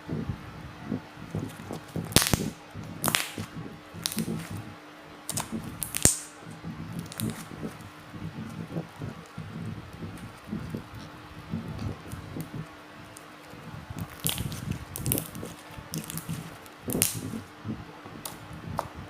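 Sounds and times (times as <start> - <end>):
slime squeezed by hand: 1.4 - 4.7, 7.0 - 7.8, 14.0 - 17.5.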